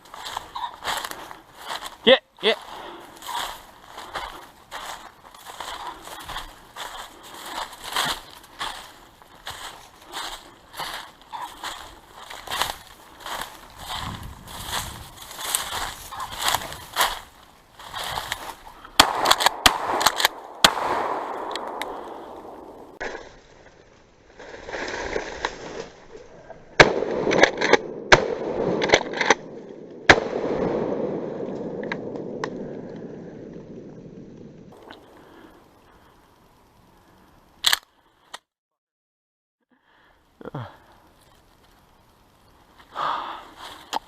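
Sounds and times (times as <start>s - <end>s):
twigs snapping and crackling: 0.0s - 2.0s, 3.0s - 27.9s
rustling through brush: 0.0s - 26.5s.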